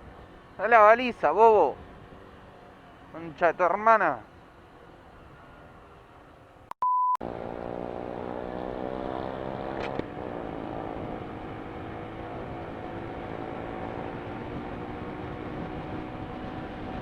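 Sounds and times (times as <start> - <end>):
censor bleep: 6.7 - 7.2
motorcycle engine accelerating: 7.2 - 17.0.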